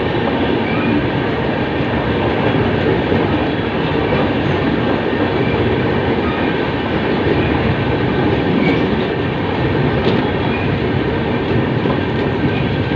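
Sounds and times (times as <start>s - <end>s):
train wheels on rails: 0.0s - 12.9s.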